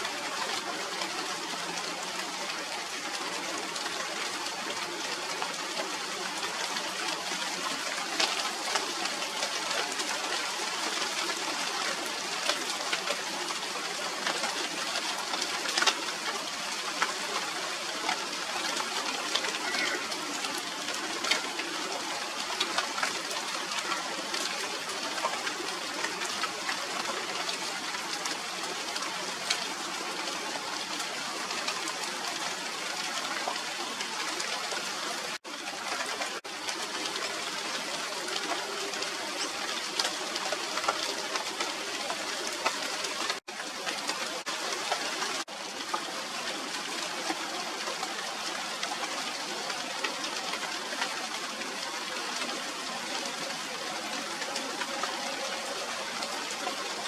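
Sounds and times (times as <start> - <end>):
rain falling on leaves: 0.0 - 57.0.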